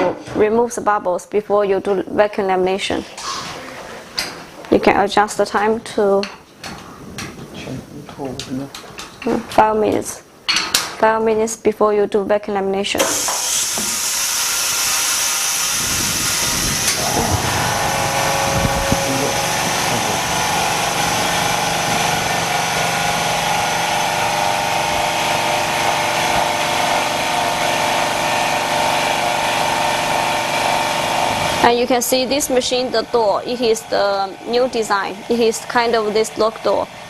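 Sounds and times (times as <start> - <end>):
steady air hiss: 13.0 - 27.0
motor humming: 13.0 - 37.0.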